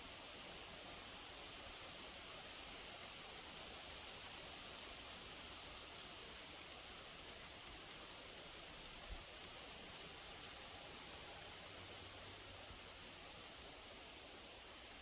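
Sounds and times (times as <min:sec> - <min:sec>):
small ticks: 0:03.9 - 0:06.0, 0:06.6 - 0:10.8.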